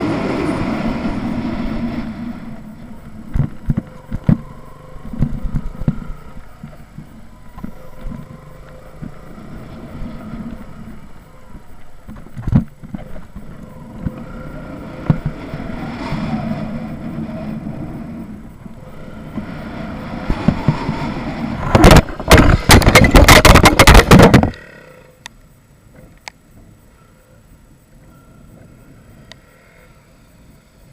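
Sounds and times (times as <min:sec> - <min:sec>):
wind thumps on microphone: 0:00.0 - 0:24.6.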